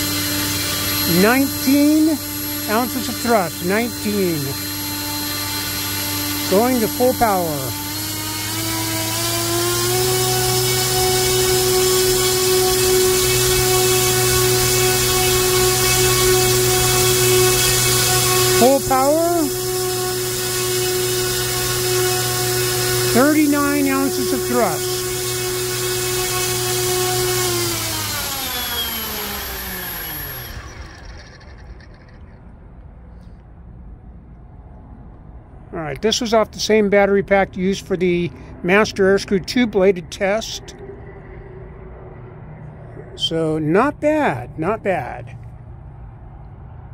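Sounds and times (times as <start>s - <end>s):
electric motor spinning propeller: 0.0s - 32.4s.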